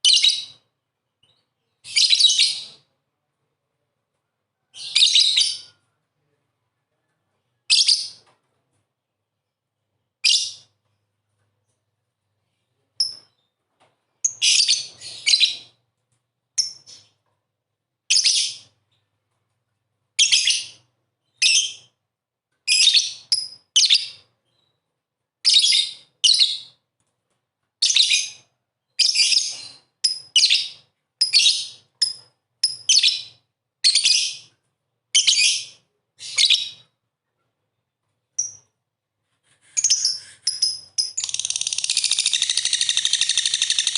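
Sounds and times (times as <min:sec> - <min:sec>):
bird giving shrill chirps: 0:39.8 - 0:43.9.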